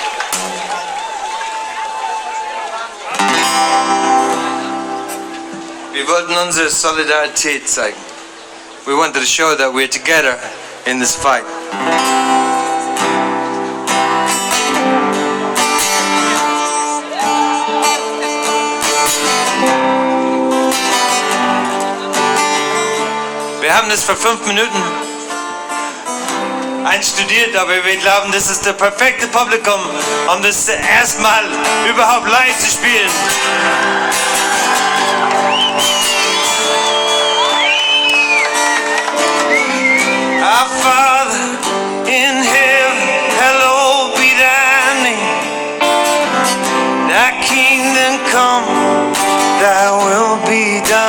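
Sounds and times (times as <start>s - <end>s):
acoustic guitar strumming chords: 3.1s - 9.4s, 10.5s - 51.0s.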